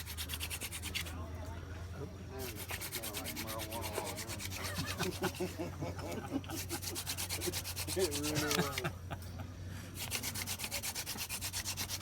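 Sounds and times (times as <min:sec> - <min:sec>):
hand drill spindle grinding wood: 0:06.5 - 0:08.9, 0:10.0 - 0:12.0.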